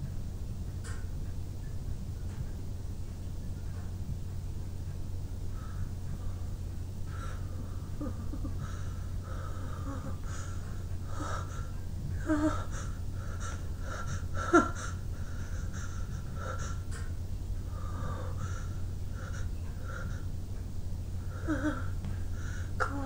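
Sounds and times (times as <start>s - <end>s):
sharp hitching breaths and gasps: 5.6s - 20.3s.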